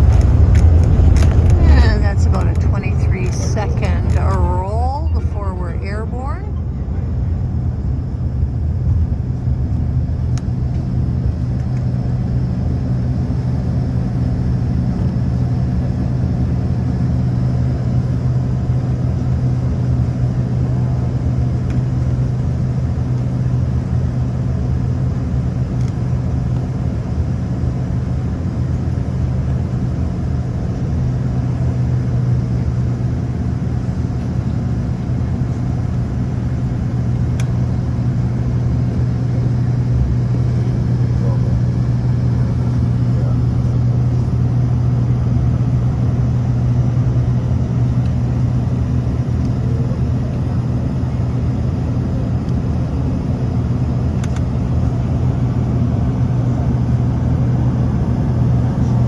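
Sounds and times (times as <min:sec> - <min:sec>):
turboprop engines droning: 0:00.0 - 0:59.0.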